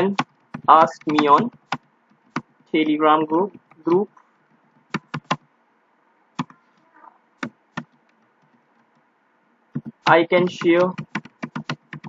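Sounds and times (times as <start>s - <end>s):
computer keyboard keystrokes: 0.1s - 2.6s, 4.7s - 5.4s, 7.4s - 9.1s, 9.8s - 12.0s.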